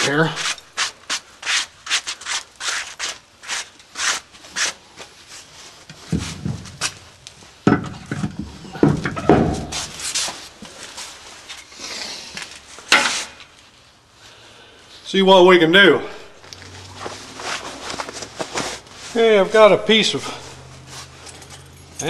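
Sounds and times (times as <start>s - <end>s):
knocks and clunks of parts: 5.9s - 10.0s, 12.9s - 13.4s.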